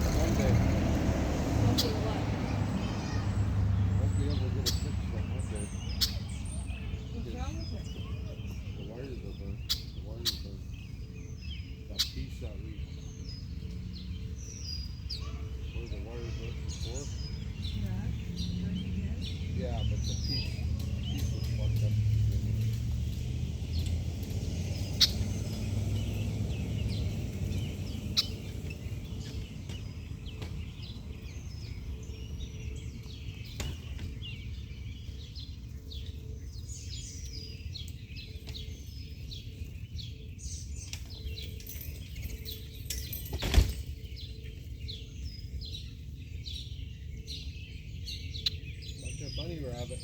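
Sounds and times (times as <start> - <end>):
small birds chirping: 0.0 - 50.0.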